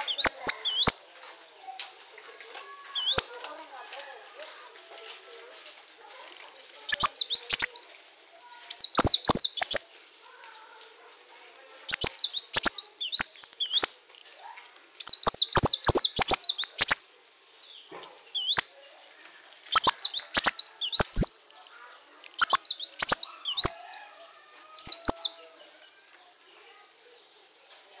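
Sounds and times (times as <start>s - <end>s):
bird twittering chirps: 0.0s - 1.1s, 2.8s - 3.4s, 6.9s - 10.0s, 11.9s - 14.0s, 15.0s - 18.8s, 19.7s - 25.9s.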